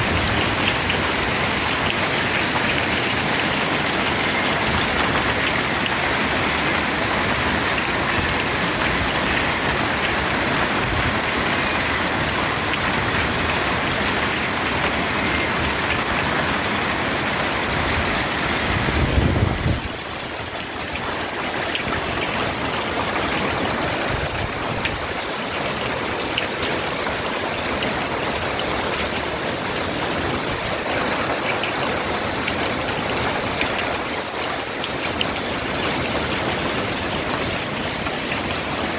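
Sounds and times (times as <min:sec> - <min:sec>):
hail ticking: 0:00.0 - 0:18.8, 0:19.8 - 0:38.9.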